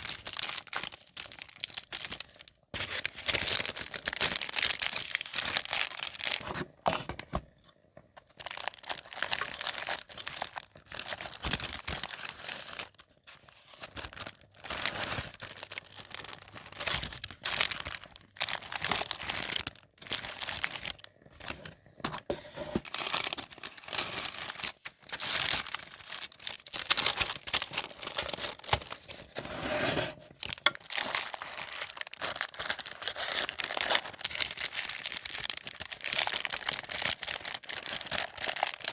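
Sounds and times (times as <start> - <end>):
paper crinkling and tearing: 8.4 - 38.9.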